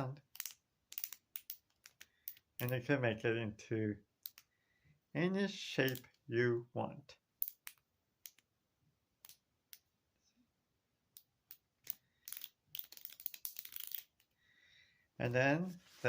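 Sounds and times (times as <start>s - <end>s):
plastic links clicking: 0.2s - 2.8s, 4.2s - 4.5s, 11.1s - 14.3s.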